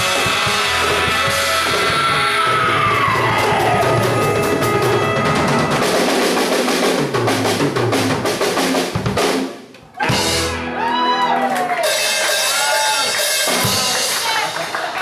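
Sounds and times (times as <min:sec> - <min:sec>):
sliding bending notes: 0:00.0 - 0:06.7
drum roll: 0:00.0 - 0:10.7, 0:11.8 - 0:15.0
live blues band: 0:00.0 - 0:15.0.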